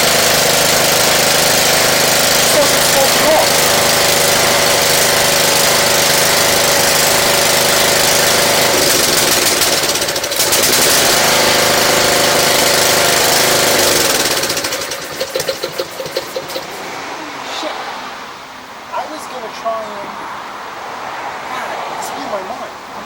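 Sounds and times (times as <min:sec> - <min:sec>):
small gasoline engine running: 0:00.0 - 0:16.9.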